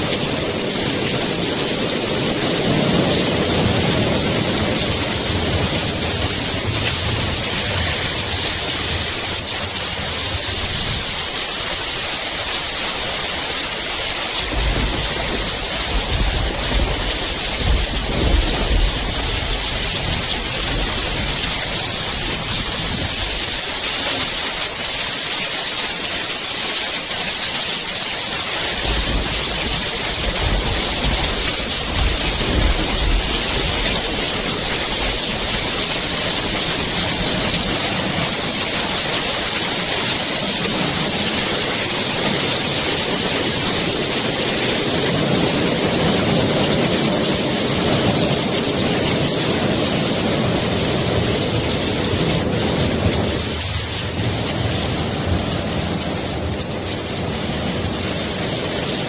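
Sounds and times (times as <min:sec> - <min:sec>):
thunder rumble: 0:00.0 - 0:25.0, 0:28.5 - 0:58.6
steady rain: 0:00.0 - 0:59.0.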